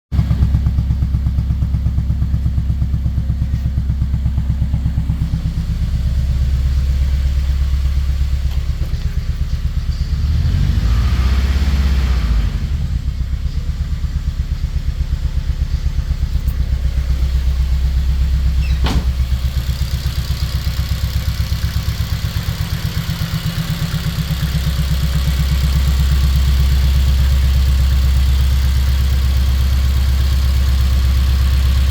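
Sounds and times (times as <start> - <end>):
engine idling with pulsing beat: 0.2 - 12.0, 12.6 - 31.9
engine revving: 4.7 - 27.4.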